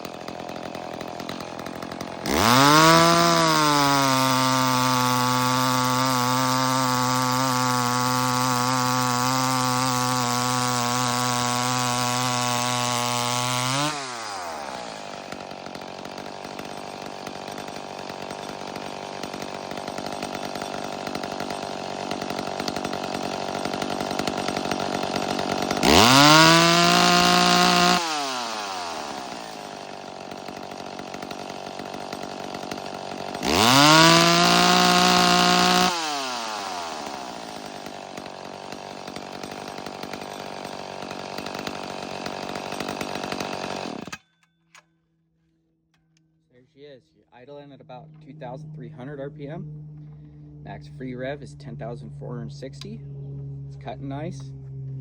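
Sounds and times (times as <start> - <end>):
chainsaw revving and idling: 0.0 - 44.2, 46.7 - 55.0.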